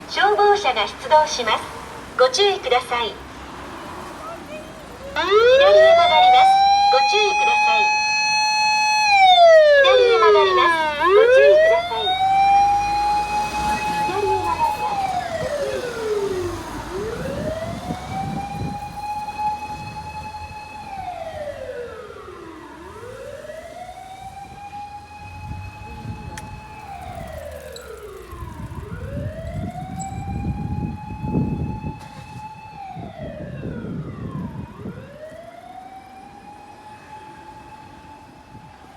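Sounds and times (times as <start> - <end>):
road noise: 0.0 - 38.9
siren wailing: 5.0 - 38.9
truck engine: 7.5 - 30.2.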